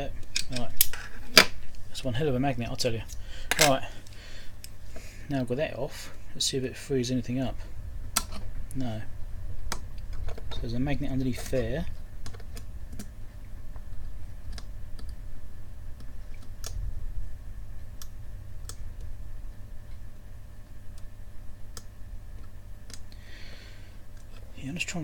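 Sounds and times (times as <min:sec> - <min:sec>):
steady low hum: 0:00.0 - 0:25.0
small sharp clicks and taps: 0:21.7 - 0:23.2.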